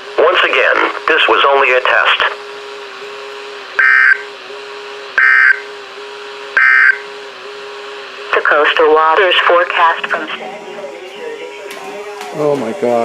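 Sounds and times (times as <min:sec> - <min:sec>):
faint receiver hum: 0:00.0 - 0:12.8
buzzy digital data bursts: 0:03.8 - 0:04.3.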